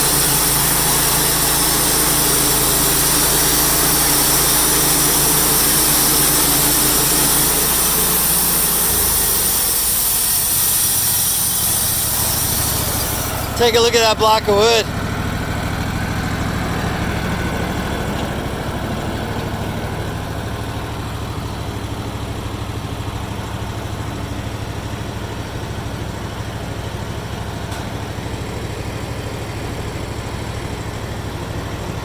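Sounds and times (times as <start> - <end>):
high whine: 0.0 - 15.2
engine idling: 0.0 - 32.0.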